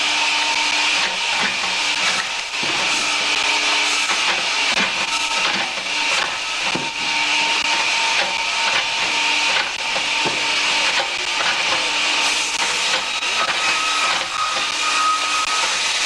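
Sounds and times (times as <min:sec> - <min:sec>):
firewood machine hissing: 0:00.0 - 0:16.0
wooden knocks: 0:04.1 - 0:11.9.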